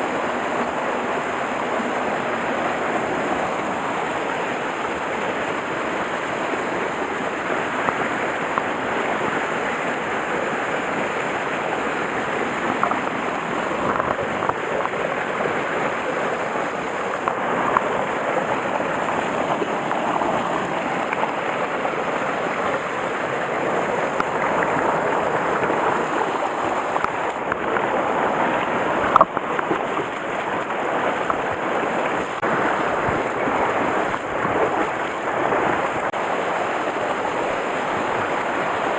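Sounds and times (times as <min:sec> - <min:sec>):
stream rushing over rocks: 0:00.0 - 0:38.9.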